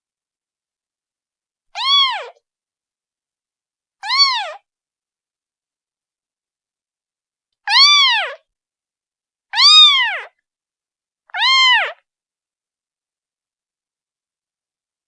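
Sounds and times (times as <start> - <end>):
kitten meowing: 1.8 - 2.4, 4.0 - 4.6, 7.7 - 8.4, 9.6 - 10.3, 11.4 - 12.0.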